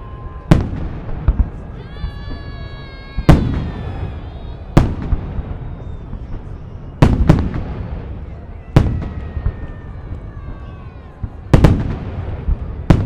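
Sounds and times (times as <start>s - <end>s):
fireworks booming with echo: 0.0s - 13.0s
steady whistle-like tone: 5.3s - 7.3s.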